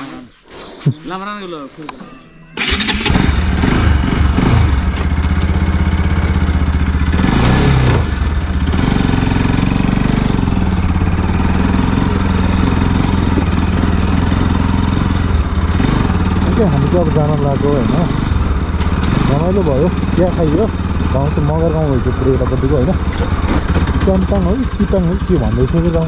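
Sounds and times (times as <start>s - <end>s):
motorcycle engine starting and idling: 2.6s - 26.0s.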